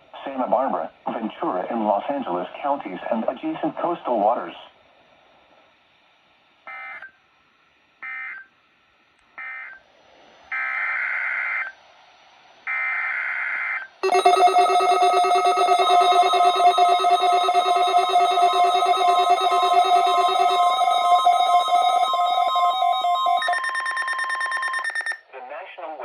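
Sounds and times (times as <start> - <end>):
screeching data bursts: 14.0 - 25.2
steady multi-pitch alert tone: 14.0 - 25.2.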